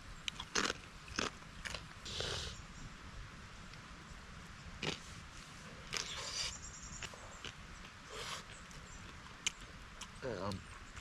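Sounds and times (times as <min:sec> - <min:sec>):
crunching crackers: 0:00.3 - 0:01.9, 0:04.8 - 0:05.0.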